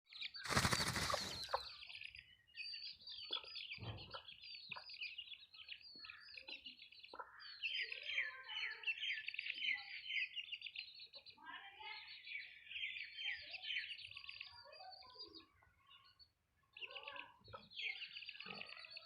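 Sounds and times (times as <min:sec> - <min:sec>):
chicks peeping: 0:00.2 - 0:11.3
loud rustling: 0:00.5 - 0:01.4.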